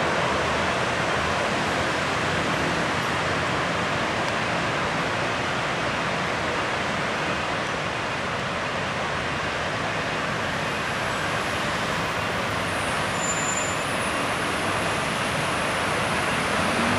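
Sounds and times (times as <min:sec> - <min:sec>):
steady rushing noise: 0:14.1 - 0:16.9.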